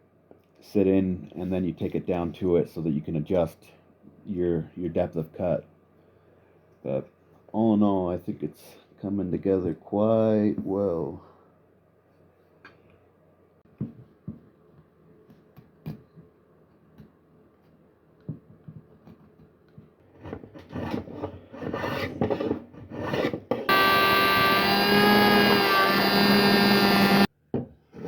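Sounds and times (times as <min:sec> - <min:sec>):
loud steady humming: 0:23.7 - 0:27.3.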